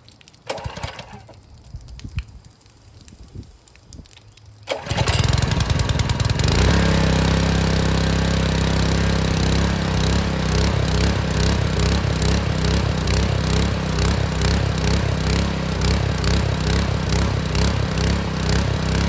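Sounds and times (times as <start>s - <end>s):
pressure washer engine running: 4.7s - 19.0s.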